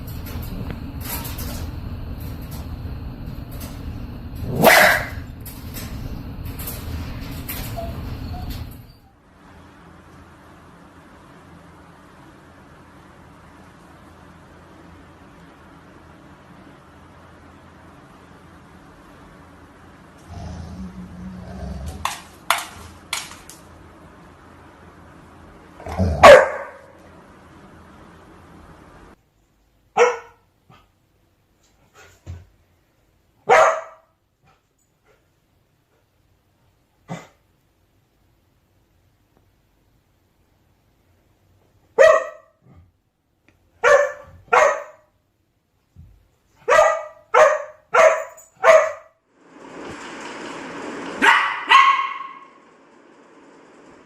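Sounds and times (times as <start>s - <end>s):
dog barking: 4.5s - 5.3s, 26.1s - 27.0s, 29.9s - 30.8s, 33.4s - 34.2s, 42.0s - 42.6s, 43.8s - 45.1s, 46.6s - 49.2s, 51.2s - 52.6s.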